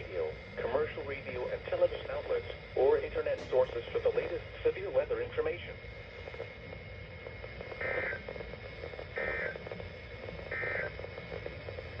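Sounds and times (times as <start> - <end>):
steady radio hiss: 0.0 - 12.0
warbling digital data tones: 6.6 - 12.0.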